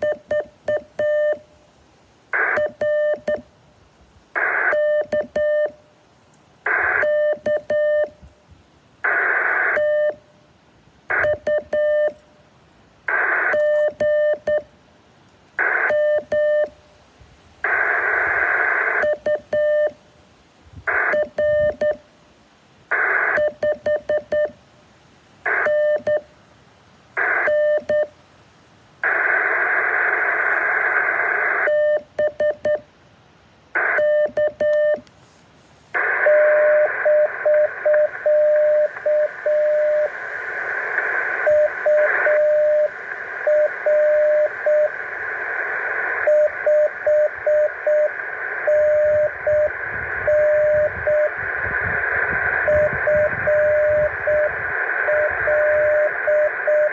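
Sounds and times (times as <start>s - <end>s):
morse code tone: 0.0s - 1.4s, 2.4s - 3.5s, 4.4s - 5.8s, 6.7s - 8.2s, 9.1s - 10.2s, 11.1s - 12.2s, 13.1s - 14.7s, 15.6s - 16.8s, 17.7s - 20.0s, 20.9s - 22.0s, 22.9s - 24.6s, 25.5s - 26.3s, 27.2s - 28.1s, 30.4s - 32.8s, 33.8s - 35.0s, 36.0s - 40.2s, 41.4s - 45.0s, 46.2s - 56.9s
bursts of radio hiss: 0.0s - 56.9s.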